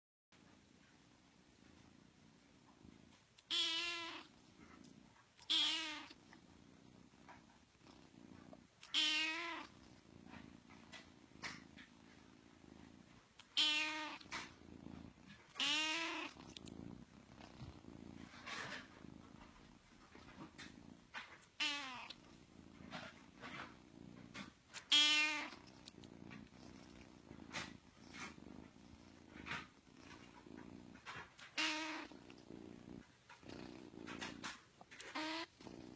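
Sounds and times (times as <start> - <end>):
kitten purring: 0.4 - 35.9.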